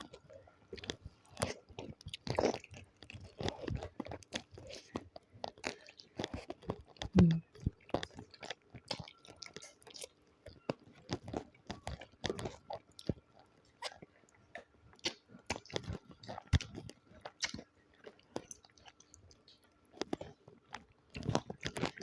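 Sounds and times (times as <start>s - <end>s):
wet chewing and crunching: 0.0s - 22.0s.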